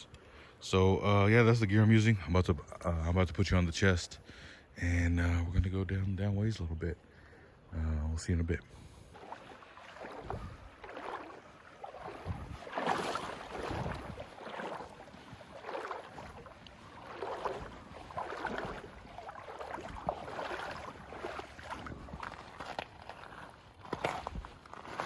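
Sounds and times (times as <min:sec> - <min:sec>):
legs wading through water: 0:06.4 - 0:25.0.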